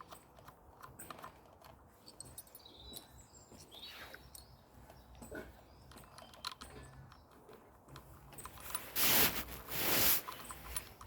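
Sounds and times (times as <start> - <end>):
tools clicking and tapping: 0.0 - 9.0
short hissing rushes: 9.0 - 10.3.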